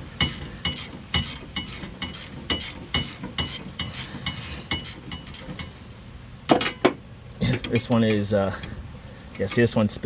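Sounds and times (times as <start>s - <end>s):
hand ratchet clicking: 0.2s - 5.4s.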